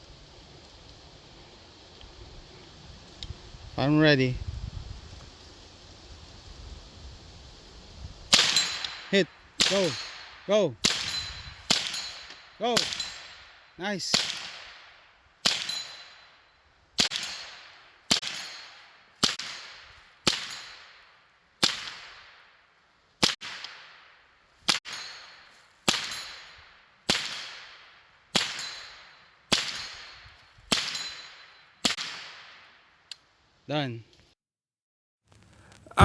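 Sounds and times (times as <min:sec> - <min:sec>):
rifle shots with echo: 0:08.3 - 0:13.4, 0:14.1 - 0:16.0, 0:17.0 - 0:18.6, 0:23.2 - 0:24.0, 0:27.1 - 0:28.9, 0:30.7 - 0:32.6.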